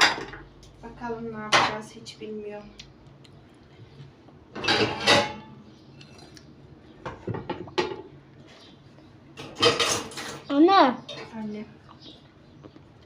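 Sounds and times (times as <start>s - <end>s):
cutlery clinking against dishes: 4.6s - 5.5s, 9.4s - 10.5s.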